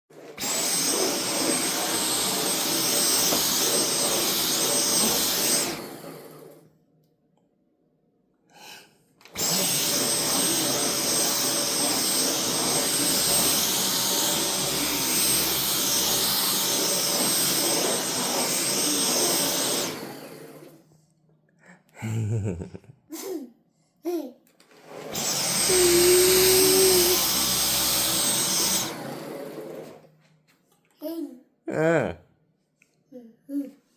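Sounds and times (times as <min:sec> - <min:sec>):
vacuum cleaner running: 0:00.1 - 0:06.6, 0:09.2 - 0:20.8, 0:24.7 - 0:30.1.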